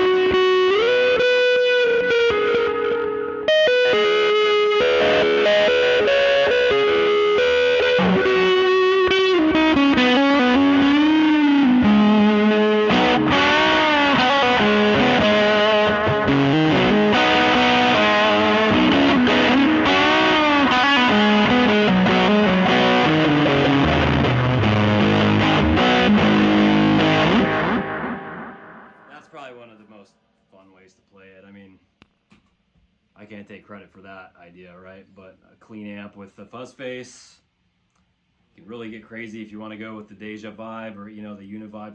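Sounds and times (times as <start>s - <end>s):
fuzzy electric guitar lead: 0.0s - 29.1s.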